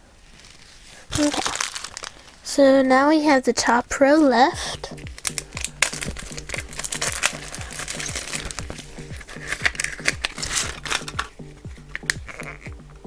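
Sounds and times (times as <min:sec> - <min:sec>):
toy packaging crinkling: 0:00.3 - 0:12.7
background music with steady beat: 0:03.5 - 0:13.0.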